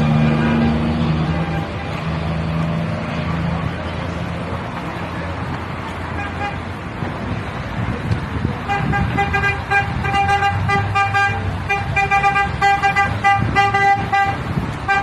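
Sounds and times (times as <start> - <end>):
truck engine rumble: 0.0 - 15.0
fire engine horn blasts: 6.2 - 6.6, 8.6 - 15.0.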